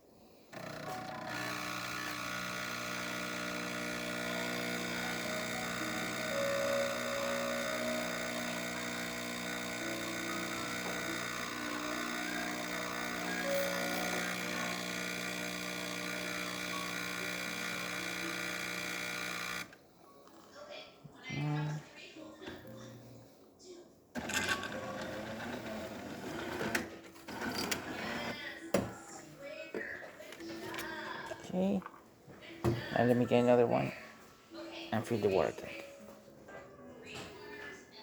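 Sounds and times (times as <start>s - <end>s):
espresso machine buzzing hum: 0.5s - 19.8s, 24.2s - 26.8s.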